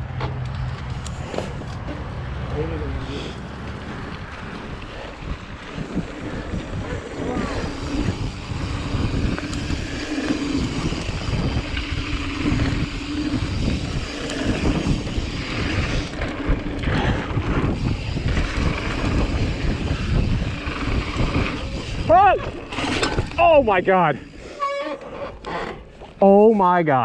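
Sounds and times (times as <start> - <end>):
bike tyres rolling on dirt: 0.0 - 27.0
wind on microphone: 3.5 - 24.4.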